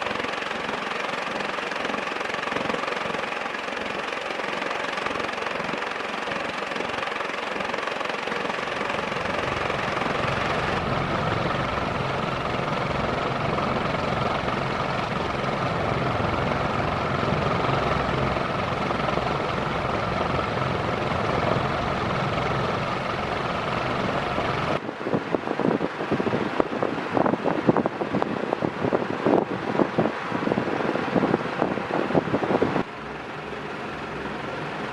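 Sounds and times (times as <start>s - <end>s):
ceiling fan air rushing: 0.0s - 34.9s
wind buffeting microphone: 8.4s - 32.9s.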